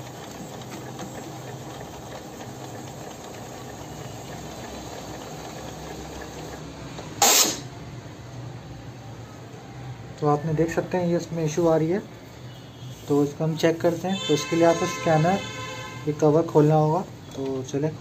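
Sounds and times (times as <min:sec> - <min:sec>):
loud harsh printer burst: 0:00.0 - 0:06.6, 0:07.2 - 0:07.7
printer mechanism humming: 0:00.0 - 0:07.8, 0:13.1 - 0:15.4.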